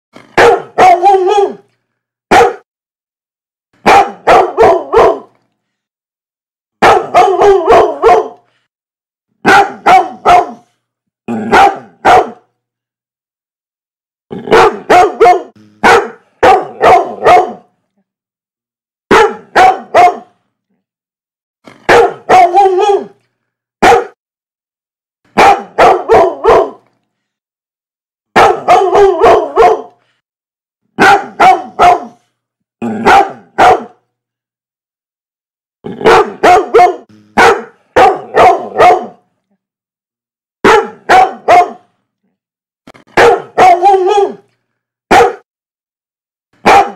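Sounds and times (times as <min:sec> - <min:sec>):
dog barking: 0:00.3 - 0:01.7, 0:02.3 - 0:02.7, 0:03.8 - 0:05.4, 0:06.8 - 0:08.5, 0:09.4 - 0:10.7, 0:11.4 - 0:12.5, 0:14.4 - 0:17.7, 0:19.1 - 0:20.4, 0:21.8 - 0:23.2, 0:23.8 - 0:24.2, 0:25.3 - 0:26.9, 0:28.3 - 0:30.0, 0:31.0 - 0:32.2, 0:32.9 - 0:34.0, 0:36.0 - 0:39.3, 0:40.6 - 0:41.9, 0:43.1 - 0:44.5, 0:45.1 - 0:45.5, 0:46.6 - 0:46.9.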